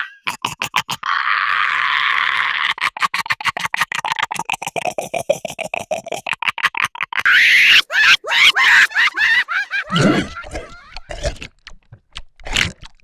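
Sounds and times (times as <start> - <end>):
creature chattering: 0.0 - 11.5
creature raspy hiss: 9.9 - 11.4.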